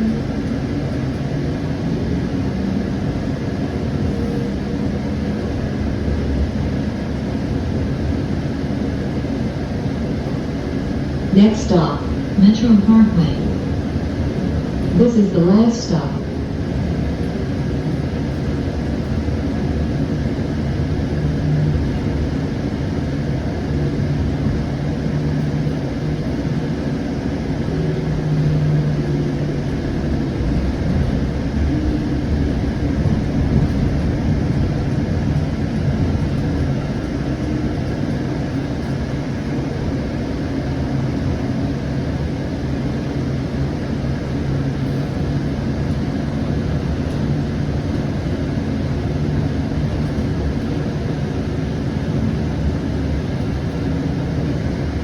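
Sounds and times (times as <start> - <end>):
wheels rumbling on rail: 0.0 - 15.1, 16.0 - 55.0
low hum: 10.2 - 42.4.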